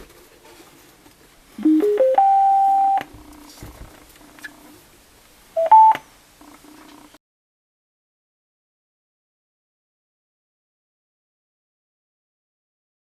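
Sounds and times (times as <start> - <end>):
two-note rising beep: 1.6 - 3.0.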